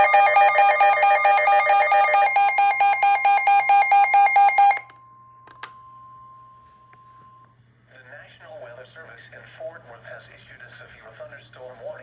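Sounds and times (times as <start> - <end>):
electronic alarm beeping rapidly: 0.0 - 4.9.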